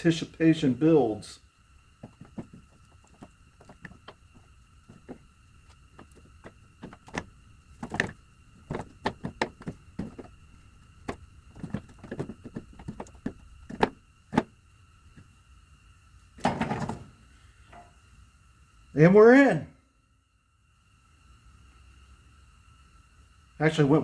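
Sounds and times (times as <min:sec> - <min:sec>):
scraping rattle of metal: 0:02.0 - 0:14.5
metal parts clunking and knocking: 0:02.0 - 0:15.2, 0:16.4 - 0:17.1.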